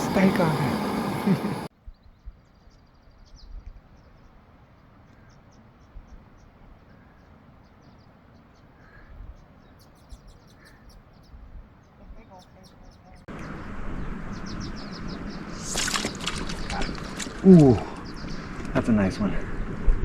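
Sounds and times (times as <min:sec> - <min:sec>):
small ticks: 0:09.8 - 0:11.3, 0:14.2 - 0:18.8
wind rumble on microphone: 0:11.1 - 0:12.4, 0:13.0 - 0:20.0.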